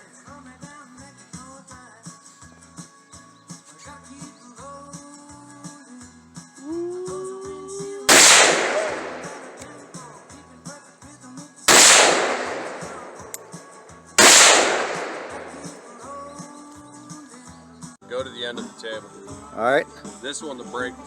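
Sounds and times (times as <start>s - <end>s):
faint music: 6.6s - 21.0s
rifle shots echoing: 8.1s - 10.2s, 11.7s - 16.1s.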